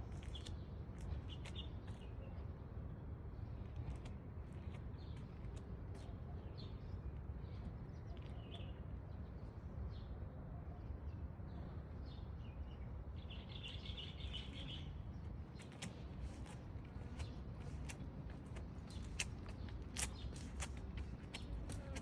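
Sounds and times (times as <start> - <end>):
small birds chirping: 12.0 - 22.0.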